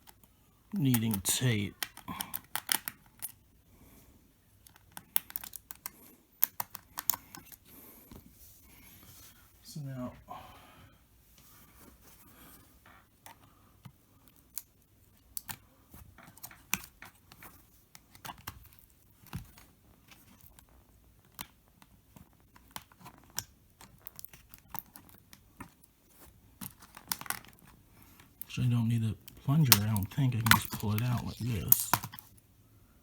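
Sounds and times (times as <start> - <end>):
hands clicking and tapping plastic: 0.9 - 3.1, 29.2 - 32.2.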